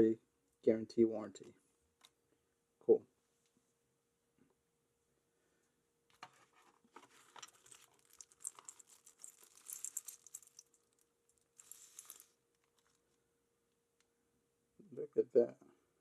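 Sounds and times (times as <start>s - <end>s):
packaging crinkling: 6.6s - 13.0s.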